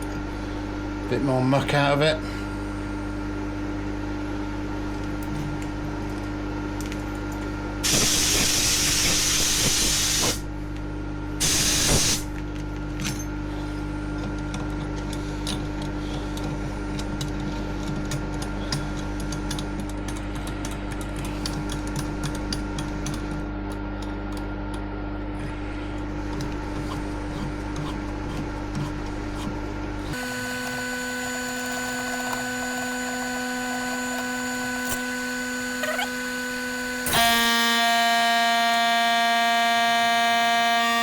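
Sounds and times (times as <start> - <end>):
steady machine hum: 0.0 - 41.0
compressed air blow gun blasting: 7.8 - 10.4, 11.4 - 12.3.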